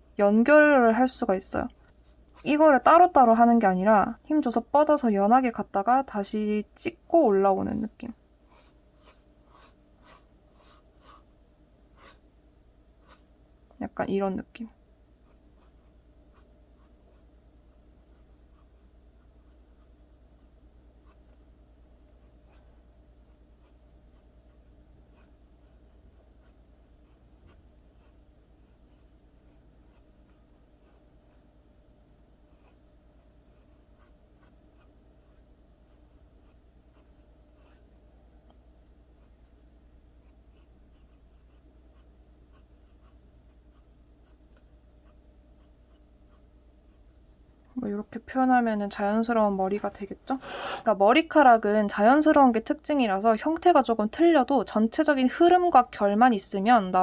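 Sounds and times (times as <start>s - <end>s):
pencil scratching on paper: 1.6s - 3.0s, 8.4s - 11.3s, 12.0s - 12.2s, 13.0s - 13.2s, 15.2s - 21.3s, 21.9s - 31.4s, 32.5s - 32.8s, 33.5s - 37.8s, 40.2s - 44.4s.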